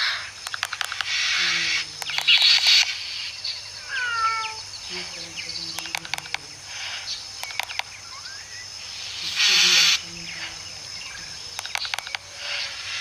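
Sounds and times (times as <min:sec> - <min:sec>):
sharp clicks: 0:00.4 - 0:01.4, 0:02.0 - 0:03.0, 0:05.7 - 0:06.5, 0:07.4 - 0:08.4, 0:11.5 - 0:12.3
short falling meow: 0:03.9 - 0:04.6.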